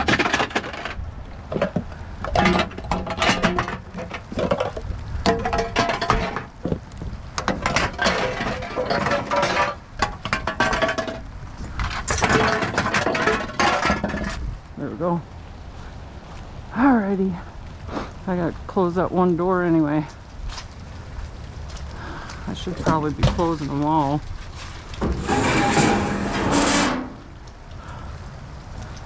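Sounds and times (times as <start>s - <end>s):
metal cans rattling and clinking: 0.0s - 6.8s, 7.4s - 14.4s.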